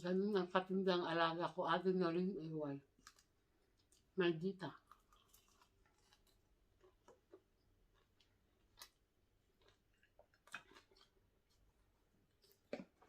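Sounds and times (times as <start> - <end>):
person chewing: 2.9 - 4.2, 4.8 - 13.0.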